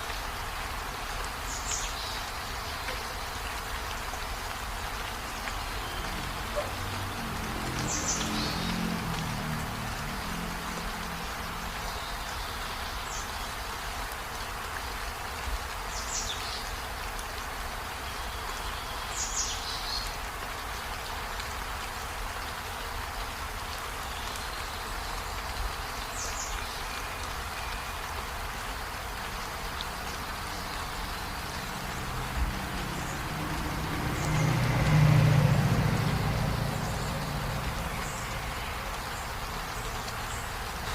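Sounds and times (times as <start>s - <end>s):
rain hissing: 0.0s - 40.9s.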